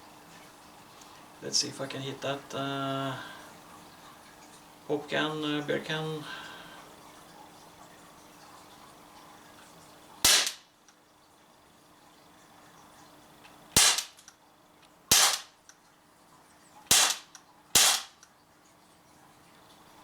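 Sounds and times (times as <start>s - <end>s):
bb gun shots: 10.3s - 10.6s, 13.8s - 14.2s, 15.1s - 15.5s, 16.9s - 18.2s.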